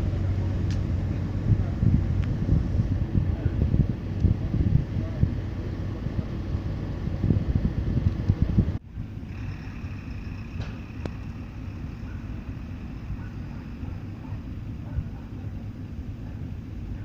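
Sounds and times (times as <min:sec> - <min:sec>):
train engine running: 0:00.0 - 0:17.0
wind buffeting microphone: 0:00.0 - 0:17.0
faint high whine: 0:08.8 - 0:17.0.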